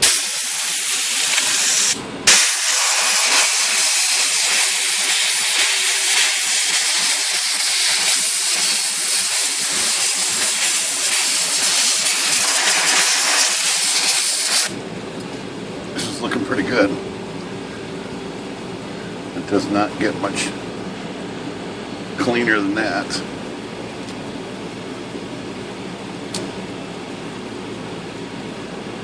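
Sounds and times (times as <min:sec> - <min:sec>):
compressed air hissing: 0:00.0 - 0:14.8.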